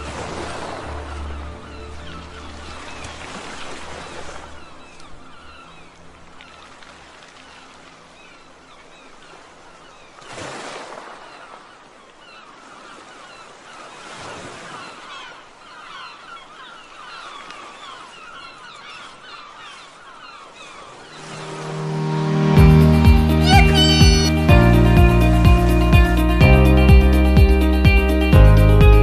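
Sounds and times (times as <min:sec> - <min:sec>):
steady rushing wash: 0:21.0 - 0:23.4
small birds chirping: 0:23.4 - 0:24.4.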